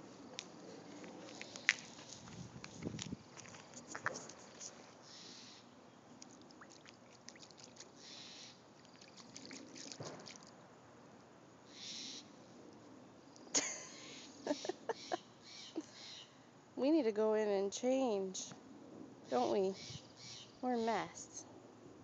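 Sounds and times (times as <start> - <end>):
water splashing in bird bath: 6.2 - 10.6.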